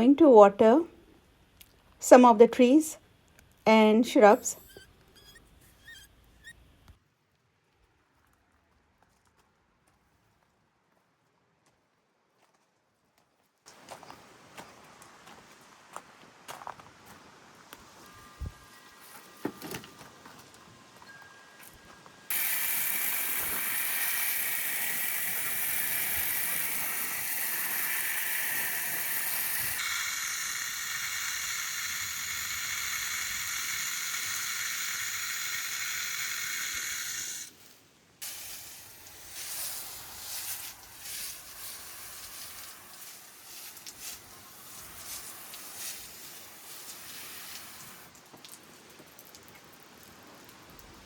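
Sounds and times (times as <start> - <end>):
garden hose spraying water: 3.7 - 4.8, 22.3 - 51.0
water dripping on leaves: 22.3 - 37.0, 41.4 - 51.0.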